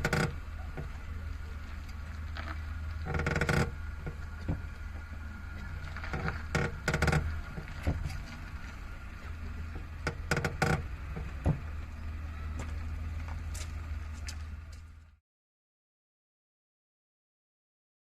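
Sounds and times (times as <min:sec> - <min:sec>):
clutch clicks and knocks: 0:00.0 - 0:01.0, 0:02.4 - 0:05.0, 0:05.6 - 0:08.5, 0:09.7 - 0:12.0
car engine idling: 0:00.0 - 0:15.2.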